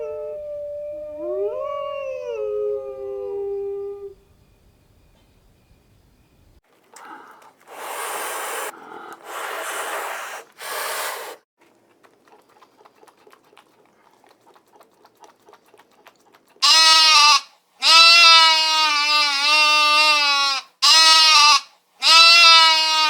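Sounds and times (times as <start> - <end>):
breathy hiss-like bursts: 6.9 - 11.5
animal bleating: 16.6 - 23.0.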